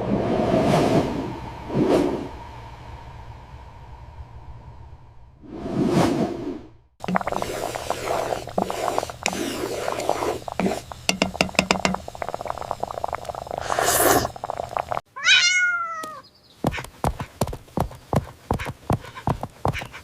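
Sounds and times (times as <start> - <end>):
cat meowing: 15.2 - 16.2.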